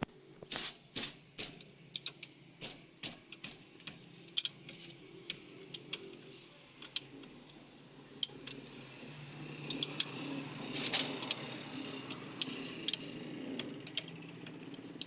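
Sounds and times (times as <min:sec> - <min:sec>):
hand tools tapping on metal: 0:00.9 - 0:07.6.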